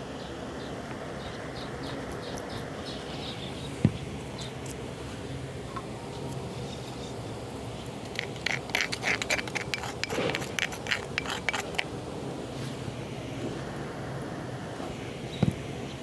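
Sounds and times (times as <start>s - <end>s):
spoon scraping a mortar: 8.0s - 11.9s.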